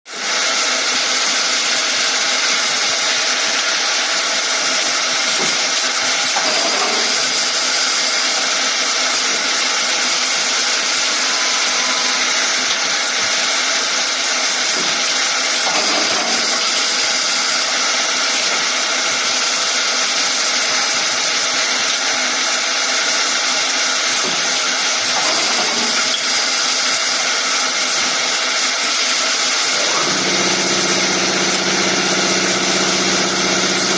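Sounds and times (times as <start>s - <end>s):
milling machine cutting wood: 0.1s - 33.9s
high-pitched spindle whine: 6.4s - 14.4s, 25.2s - 33.9s.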